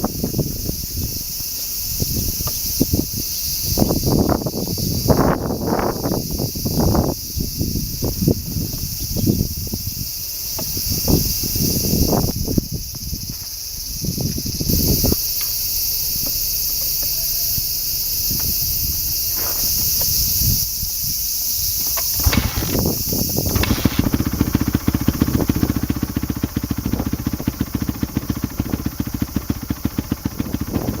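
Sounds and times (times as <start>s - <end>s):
insects buzzing: 0.0s - 31.0s
motorcycle engine running: 22.0s - 31.0s.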